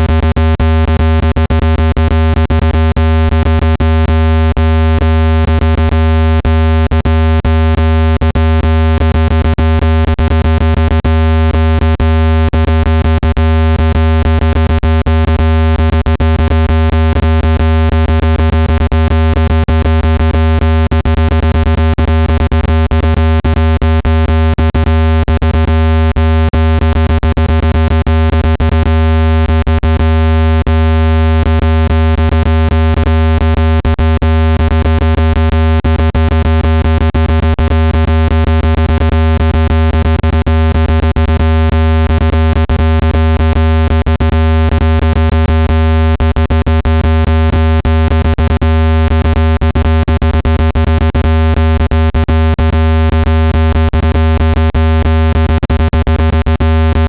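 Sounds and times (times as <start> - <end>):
loud low electronic buzzing tone: 0.0 - 57.0.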